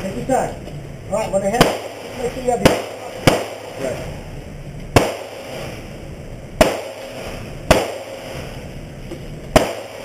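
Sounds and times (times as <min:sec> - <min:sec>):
gunshots: 0:01.5 - 0:04.0, 0:04.9 - 0:05.8, 0:06.6 - 0:08.6, 0:09.5 - 0:10.0
gunshot echo: 0:01.6 - 0:04.0, 0:04.9 - 0:05.8, 0:06.6 - 0:08.6, 0:09.5 - 0:10.0.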